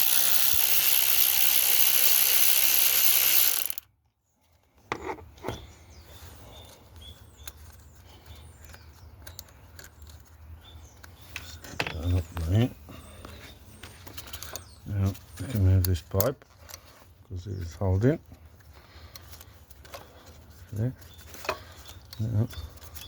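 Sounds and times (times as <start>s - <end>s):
power ratchet spinning: 0.0s - 3.9s
tools and parts clicking: 0.0s - 3.9s, 8.6s - 10.4s.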